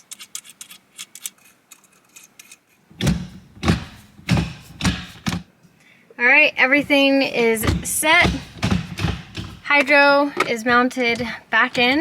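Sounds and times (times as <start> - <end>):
small metallic clicks and rattles: 0.0 - 2.6
knocks and clunks: 2.9 - 5.5, 6.6 - 12.0.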